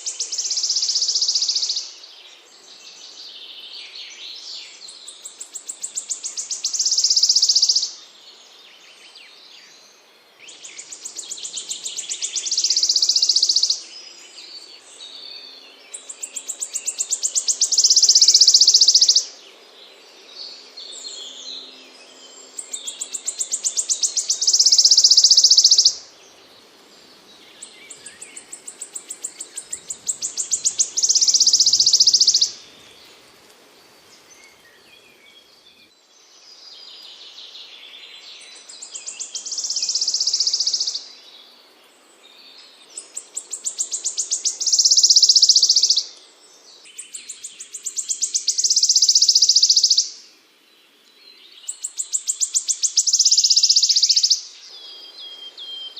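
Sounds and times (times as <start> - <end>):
songbird singing: 0.0 - 55.9.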